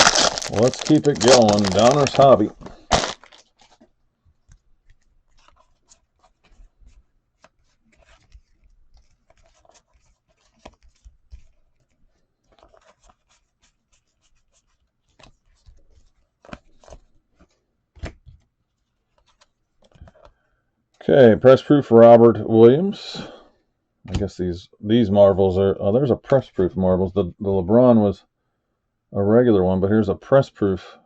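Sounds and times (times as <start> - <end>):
trading cards clicking and rustling: 0.0 - 20.4.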